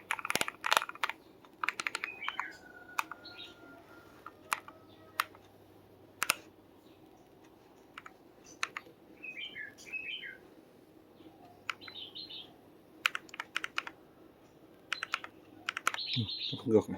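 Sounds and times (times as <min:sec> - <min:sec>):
mechanical keyboard keystrokes: 0:00.0 - 0:03.3, 0:04.2 - 0:05.4, 0:06.2 - 0:06.5, 0:07.9 - 0:08.9, 0:11.6 - 0:12.0, 0:13.0 - 0:14.0, 0:14.9 - 0:16.1.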